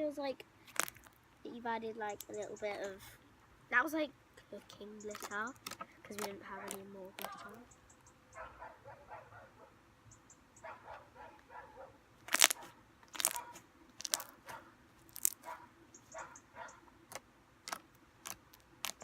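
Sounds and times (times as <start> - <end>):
slime squelching and popping: 0.6 - 1.2, 5.1 - 7.6, 12.2 - 15.5, 17.1 - 19.0.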